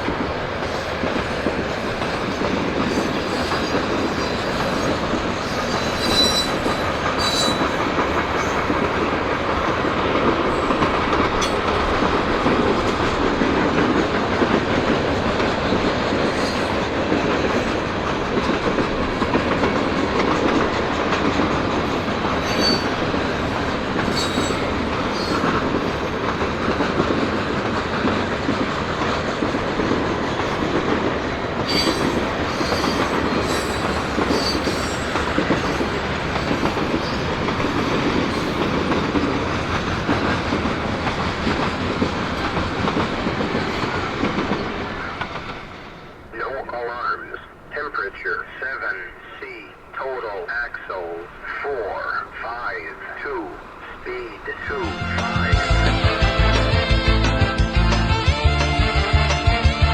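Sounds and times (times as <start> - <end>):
wheels clicking over rail joints: 0.0 - 45.7
freight train cars rolling: 0.0 - 59.6
faint wheel squeals: 5.7 - 7.7.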